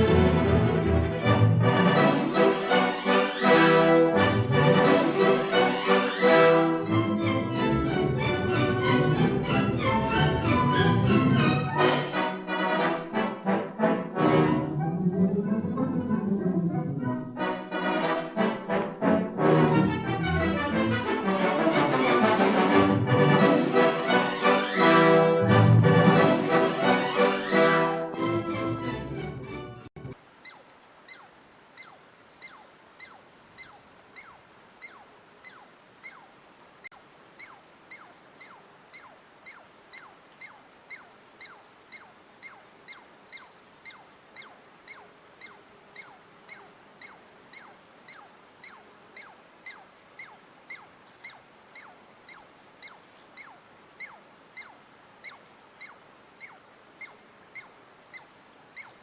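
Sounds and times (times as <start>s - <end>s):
faint background hiss: 0.0s - 15.8s, 30.0s - 59.0s
small animal chipping: 30.4s - 59.0s.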